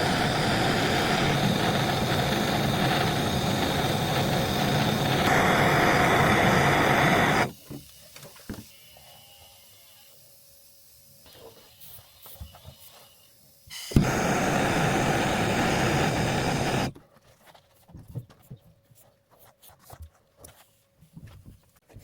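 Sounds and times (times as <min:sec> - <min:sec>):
soldering torch flame burning: 0:00.0 - 0:08.6, 0:13.4 - 0:17.0.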